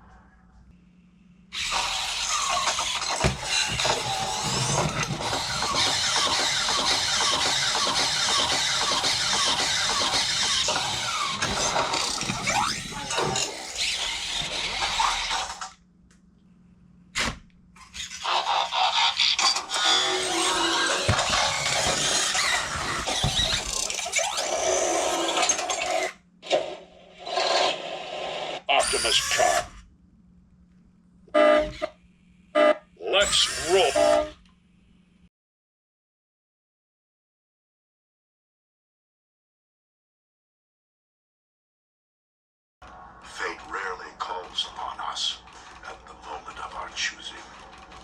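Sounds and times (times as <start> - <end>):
steady mechanical noise: 0.5 - 15.8, 17.2 - 29.9, 33.2 - 34.5, 42.8 - 48.0
toy robot servos whirring: 1.5 - 15.8, 17.8 - 29.8, 33.2 - 34.4.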